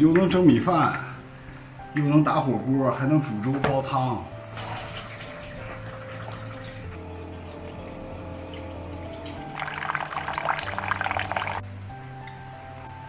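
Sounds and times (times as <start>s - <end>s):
slow background music: 0.0s - 13.0s
water pouring splash: 4.5s - 7.0s, 7.9s - 11.6s.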